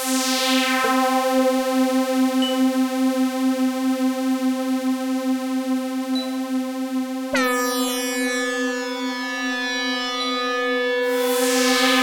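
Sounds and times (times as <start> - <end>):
buzzy synthesized air horn: 7.4 - 12.0.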